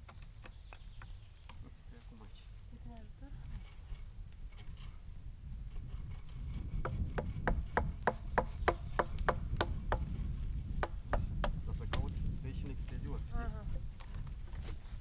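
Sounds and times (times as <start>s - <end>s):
hand tool striking wood: 6.7s - 10.2s, 10.8s - 12.1s.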